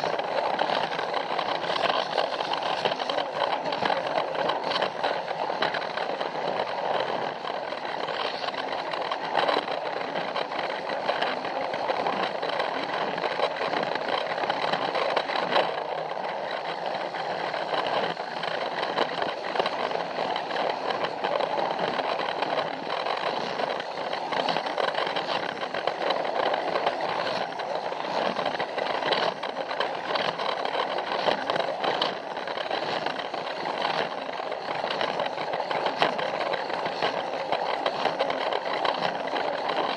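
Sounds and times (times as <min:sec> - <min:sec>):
scattered clicks: 0:00.0 - 0:39.9
toy train whirring rattle: 0:00.0 - 0:39.9.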